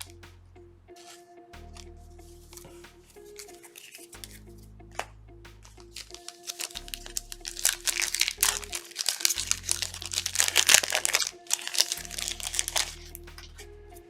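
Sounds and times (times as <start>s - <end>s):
background music with bass line: 0.0s - 14.0s
plastic wrapper crinkling and tearing: 5.0s - 13.6s.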